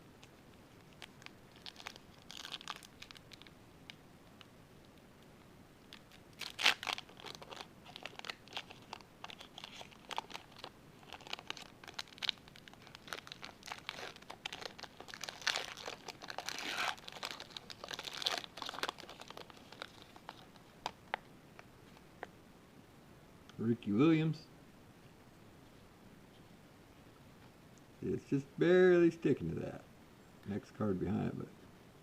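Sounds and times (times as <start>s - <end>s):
wrapper tearing and crinkling: 0.8s - 4.0s, 5.9s - 21.0s.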